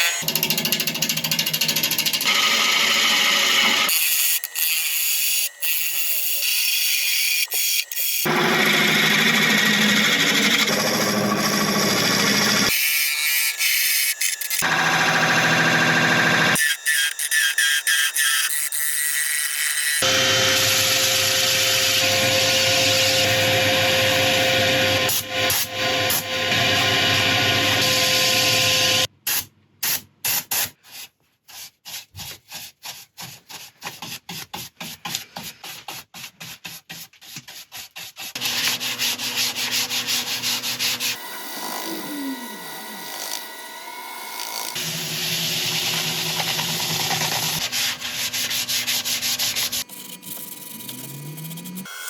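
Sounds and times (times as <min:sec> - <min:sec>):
wood lathe turning: 0:00.1 - 0:12.8, 0:13.4 - 0:25.1, 0:38.4 - 0:51.9.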